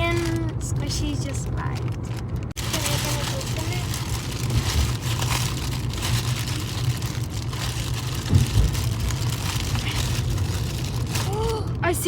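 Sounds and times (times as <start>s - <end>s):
plastic packaging tearing and crinkling: 0.0s - 11.6s.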